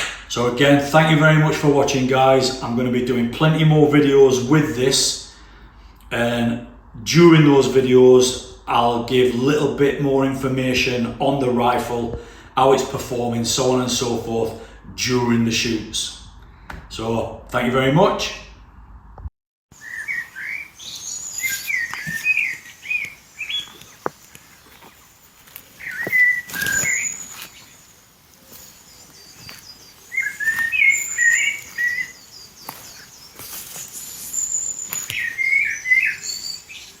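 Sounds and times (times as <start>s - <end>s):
songbird warbling chirps: 19.7s - 37.0s.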